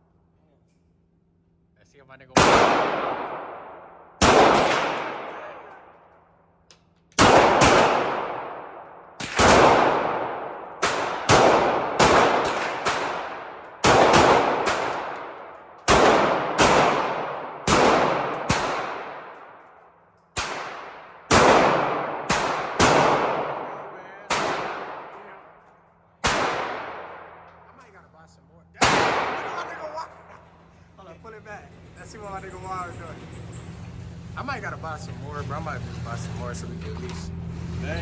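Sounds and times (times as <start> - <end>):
echoing gunshots: 2.3 - 6.1, 7.2 - 27.8, 28.8 - 30.4.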